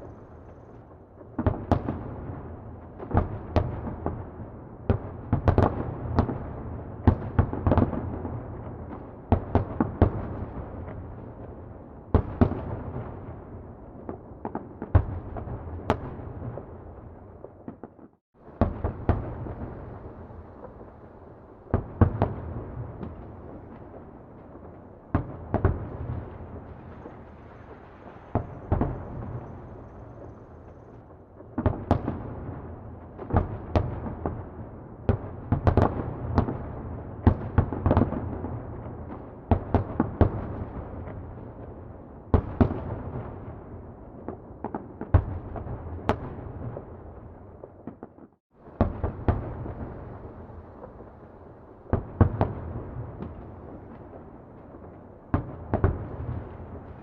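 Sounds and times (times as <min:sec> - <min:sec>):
distant fireworks bangs: 0:12.2 - 0:57.0.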